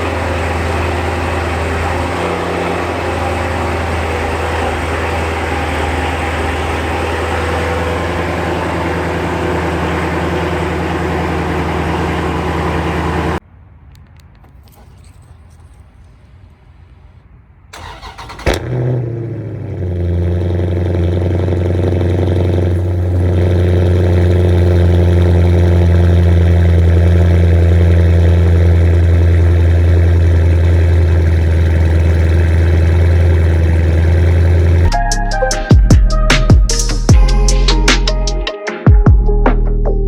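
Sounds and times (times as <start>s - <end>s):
engine bark and fast idle: 0.0s - 13.4s, 17.8s - 35.0s
starter cranking: 17.8s - 18.9s.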